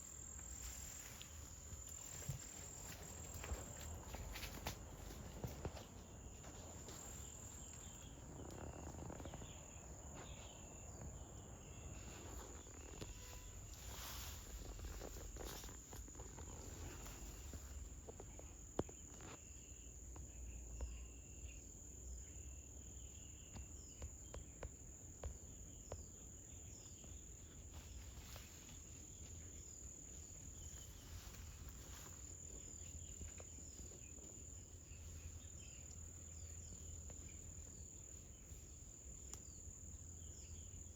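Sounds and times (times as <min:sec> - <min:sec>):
crickets trilling: 0:00.0 - 0:40.9.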